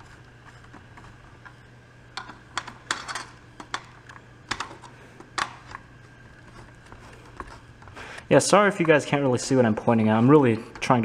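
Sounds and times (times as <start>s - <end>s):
screwdriver clicking on screws: 2.2s - 8.0s.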